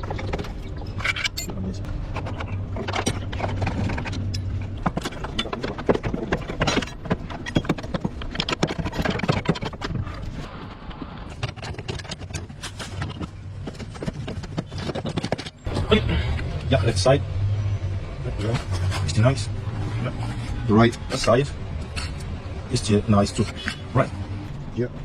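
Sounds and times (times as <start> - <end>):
clicks and knocks of tools: 0.2 - 1.6.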